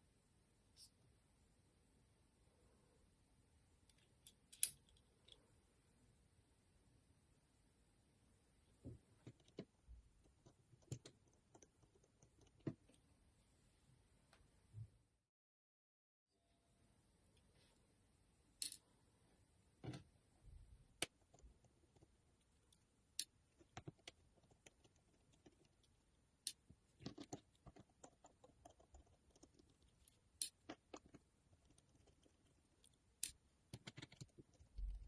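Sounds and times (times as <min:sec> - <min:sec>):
small plastic and metal clicks: 0:03.9 - 0:05.4, 0:32.8 - 0:34.7.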